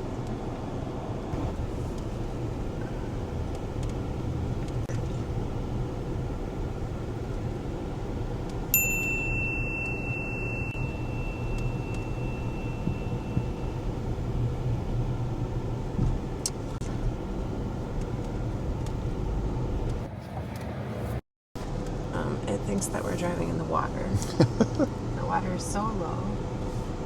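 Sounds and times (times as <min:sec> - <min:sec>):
car cabin rumble: 0:01.3 - 0:27.0
electronic ding: 0:08.8 - 0:13.8.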